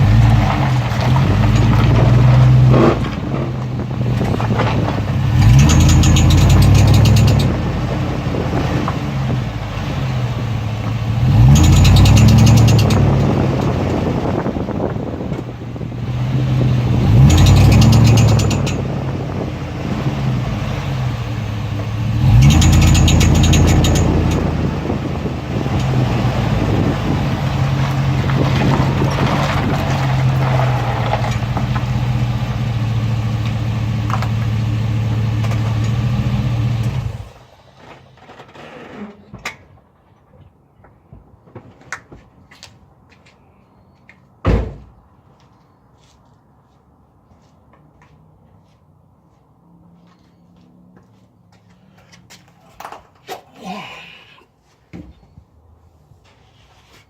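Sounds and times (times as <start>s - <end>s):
engine revving: 0.0s - 37.4s.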